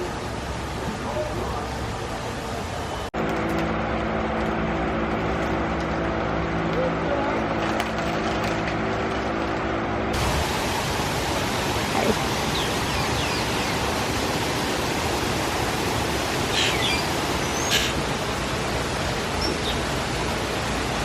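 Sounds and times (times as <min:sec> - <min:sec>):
waterfall rushing: 0:10.2 - 0:21.0.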